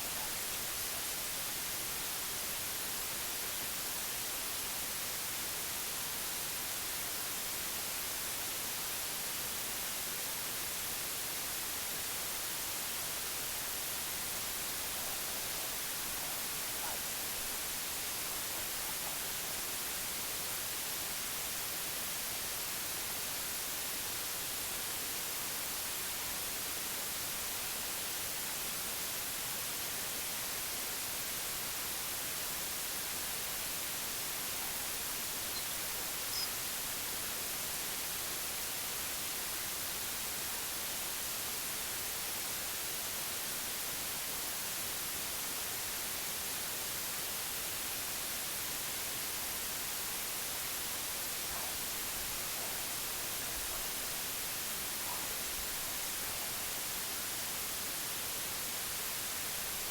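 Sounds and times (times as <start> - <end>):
white noise hiss: 0.0 - 59.9
faint chirp: 34.6 - 36.6.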